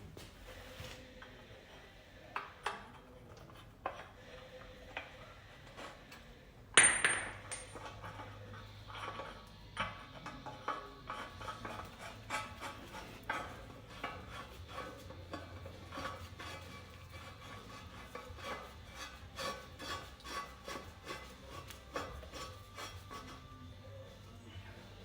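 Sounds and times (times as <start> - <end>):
hand tools scraping metal: 7.4 - 23.6.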